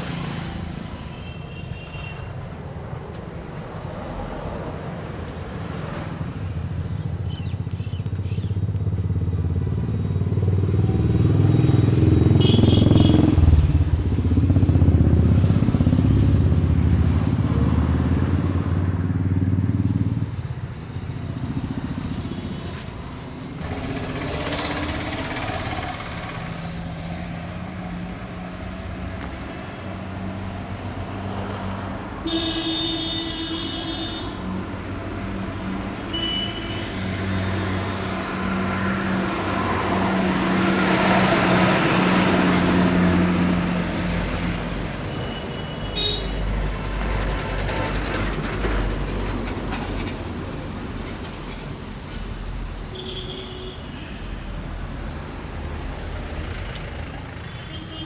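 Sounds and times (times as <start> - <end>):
passing vehicle engines: 0.0 - 58.0
car horn honking: 12.4 - 13.2, 32.2 - 34.6, 36.1 - 37.1, 45.1 - 46.4, 52.9 - 54.3
vehicle passing close: 23.6 - 32.2.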